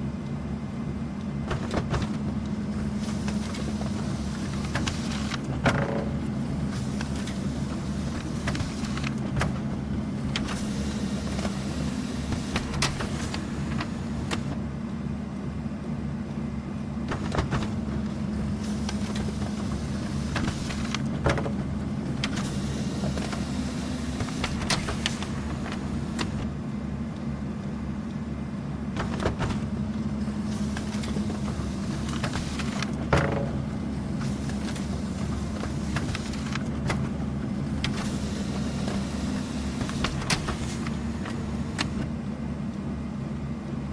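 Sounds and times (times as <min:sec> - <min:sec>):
printer motor hum and paper feed: 0:01.4 - 0:14.7, 0:17.0 - 0:26.7, 0:28.8 - 0:43.0
printer click: 0:39.7 - 0:42.1.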